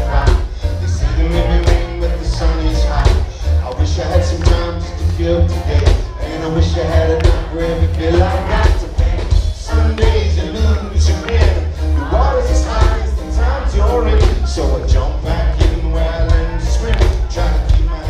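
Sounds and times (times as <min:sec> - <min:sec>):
drum beat: 0:00.0 - 0:18.0
heavy bass: 0:00.0 - 0:18.0
live band playing: 0:00.0 - 0:18.0
person singing: 0:00.0 - 0:18.0.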